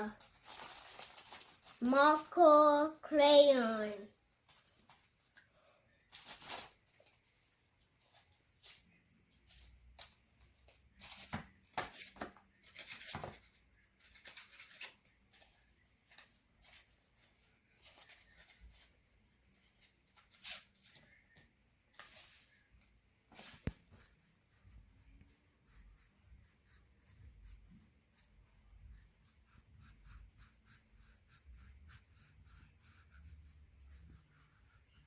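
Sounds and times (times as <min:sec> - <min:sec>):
marker scratching on paper: 0:23.3 - 0:35.0.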